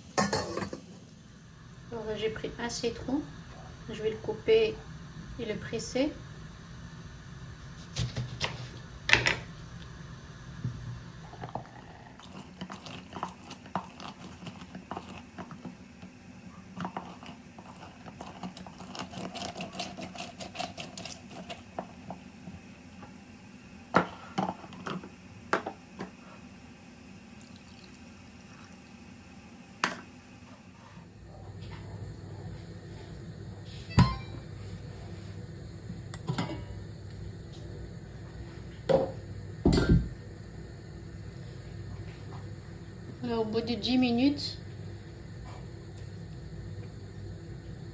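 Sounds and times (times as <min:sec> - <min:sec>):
wet squeezing of lemon: 0:11.2 - 0:15.7.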